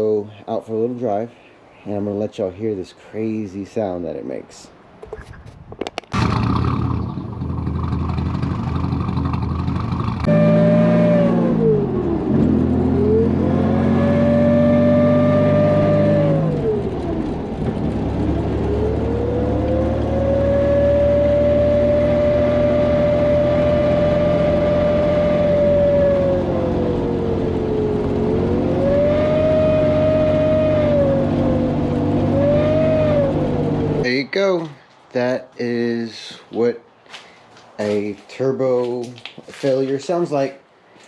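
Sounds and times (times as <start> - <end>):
car engine running: 6.2 - 34.0
turbo siren whine: 10.2 - 17.0, 18.2 - 34.0.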